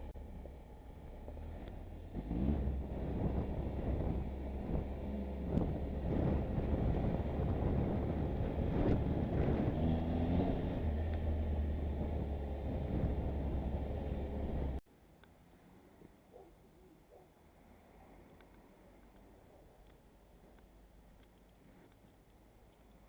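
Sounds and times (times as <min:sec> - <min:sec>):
motorcycle engine running: 0:00.0 - 0:14.8
wind noise on microphone: 0:02.2 - 0:14.8.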